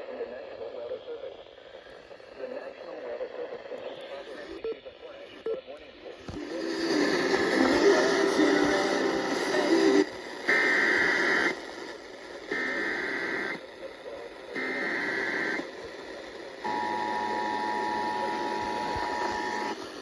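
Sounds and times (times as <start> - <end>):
radio hiss: 0.0 - 20.0
screeching data tones: 16.6 - 19.8.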